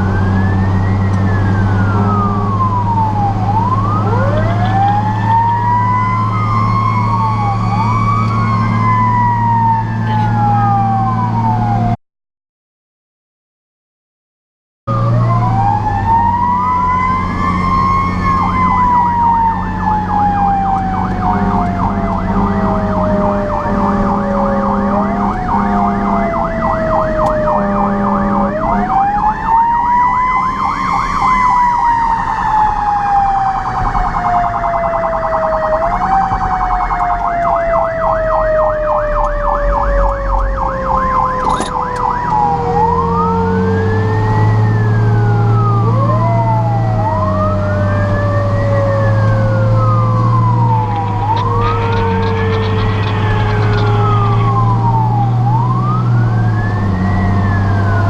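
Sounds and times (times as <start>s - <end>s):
siren wail: 0.0s - 12.0s, 14.9s - 58.0s
siren yelp: 0.0s - 12.0s, 14.9s - 58.0s
truck engine drone: 0.0s - 12.0s, 14.9s - 58.0s.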